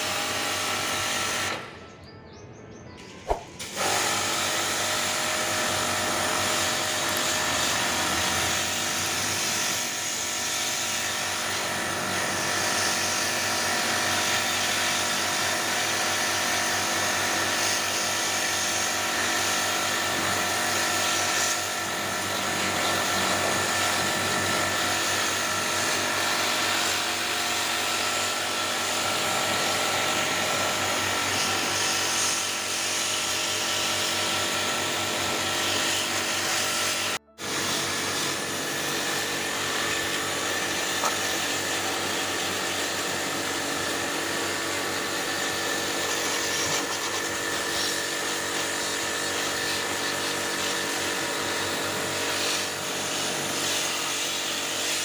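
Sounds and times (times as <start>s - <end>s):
small electric motor running: 0.0s - 1.7s, 3.7s - 55.0s
sharp click: 3.1s - 3.7s.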